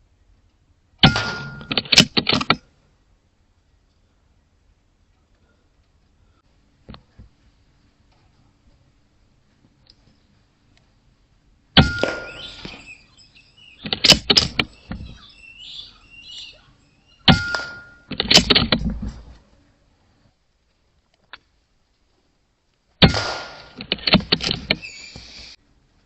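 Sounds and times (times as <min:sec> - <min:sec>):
air rifle shot: 0:01.0 - 0:02.2, 0:11.8 - 0:12.9, 0:23.0 - 0:24.3.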